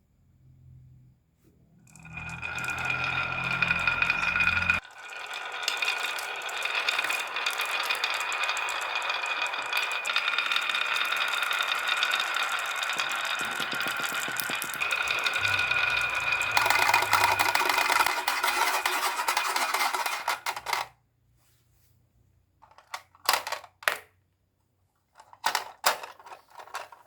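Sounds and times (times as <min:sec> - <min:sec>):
low hum: 0:01.8 - 0:05.5, 0:10.6 - 0:18.2
marbles rattling down track: 0:01.9 - 0:20.9.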